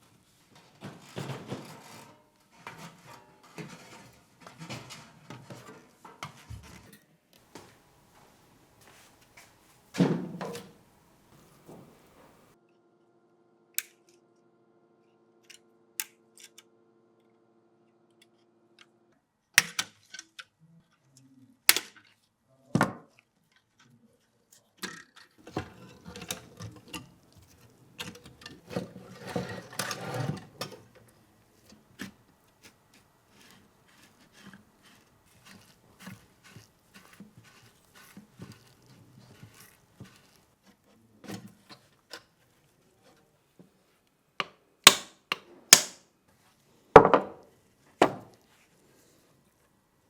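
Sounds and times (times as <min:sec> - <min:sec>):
metal scraping and rubbing: 0:00.8 - 0:06.8, 0:25.5 - 0:31.0.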